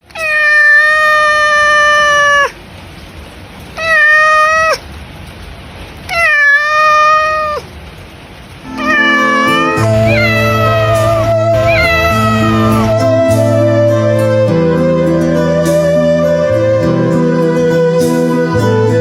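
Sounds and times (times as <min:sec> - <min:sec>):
cat meowing: 0:00.0 - 0:02.6, 0:03.8 - 0:04.8, 0:06.1 - 0:07.7, 0:08.6 - 0:13.8.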